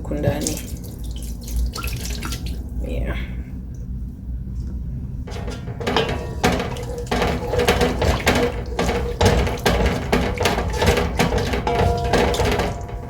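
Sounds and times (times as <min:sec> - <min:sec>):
spoon scraping a pan: 0:05.3 - 0:13.0.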